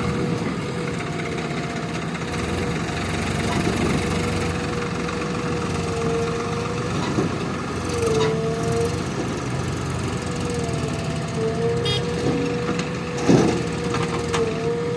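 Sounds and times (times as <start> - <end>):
diesel engine running with whine: 0.0 - 14.9.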